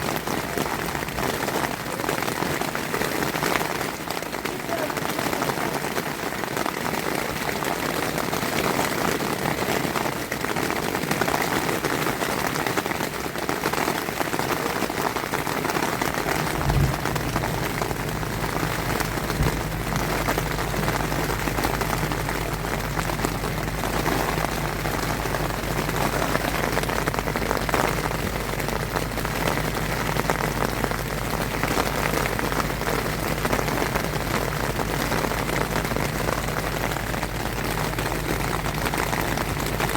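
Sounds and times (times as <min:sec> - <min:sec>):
heavy rain drumming on tent: 0:00.0 - 0:39.9
steady low hum: 0:16.1 - 0:39.9.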